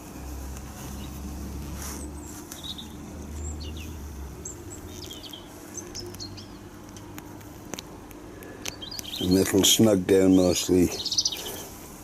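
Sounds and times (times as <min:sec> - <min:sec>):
low steady outdoor hum: 0:00.0 - 0:12.0
small birds chirping: 0:00.2 - 0:12.0
small clicks: 0:05.0 - 0:09.2.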